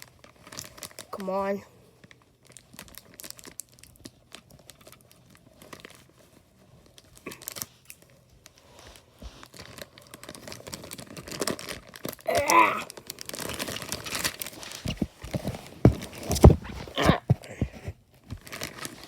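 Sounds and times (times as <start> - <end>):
plastic packaging crinkling and tearing: 0.0 - 1.2, 1.9 - 19.0.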